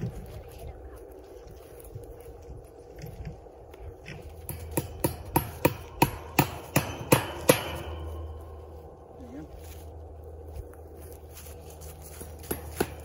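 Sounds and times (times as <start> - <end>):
hammer striking wood: 4.5 - 8.4, 12.4 - 13.0.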